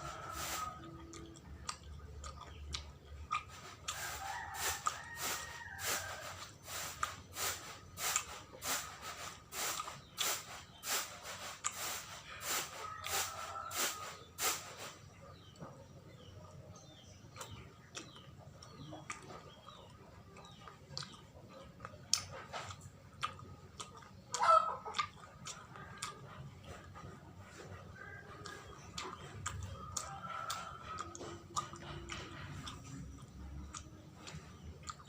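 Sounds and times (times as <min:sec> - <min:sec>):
wet chewing: 0:00.0 - 0:14.6, 0:15.2 - 0:35.0
mouth clicks and smacks: 0:16.4 - 0:27.2, 0:28.3 - 0:35.0.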